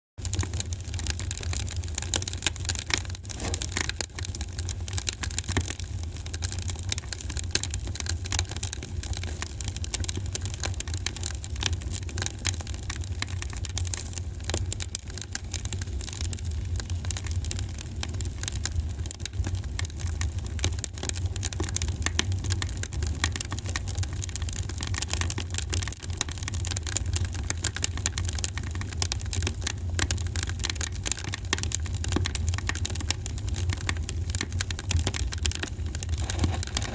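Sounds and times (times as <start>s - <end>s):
burning wood crackling: 0.2s - 18.0s, 32.8s - 36.9s.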